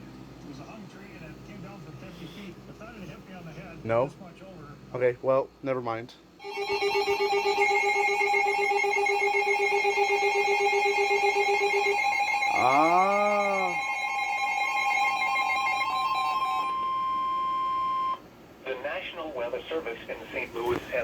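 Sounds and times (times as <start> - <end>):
steady alarm tone: 6.4 - 18.2
warbling electronic alert tones: 6.4 - 18.2.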